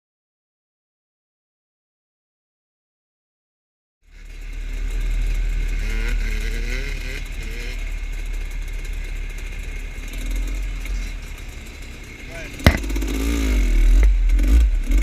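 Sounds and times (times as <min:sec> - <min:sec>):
dirt bike engines rumbling: 0:04.0 - 0:15.0.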